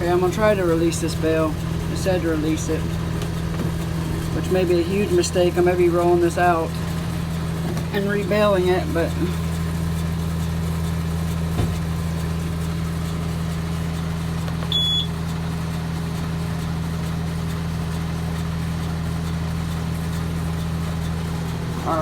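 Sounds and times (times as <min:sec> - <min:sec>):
tractor engine running: 0:00.0 - 0:22.0
short electronic beep: 0:14.7 - 0:15.1.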